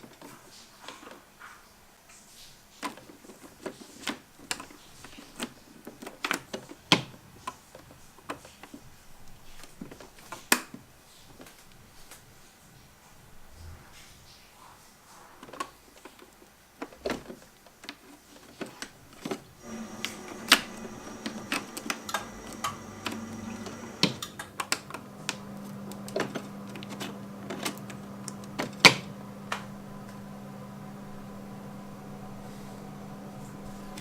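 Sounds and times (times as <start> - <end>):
coffee maker electrical hum: 19.6 - 34.0
faint high whine: 19.6 - 34.0.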